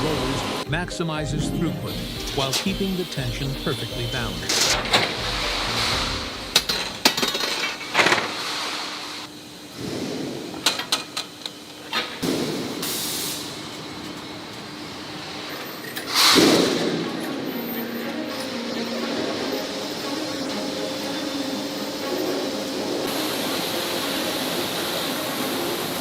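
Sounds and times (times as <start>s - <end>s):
loud noisy surge: 0.0s - 7.4s
machinery humming: 0.0s - 8.0s, 16.9s - 26.0s.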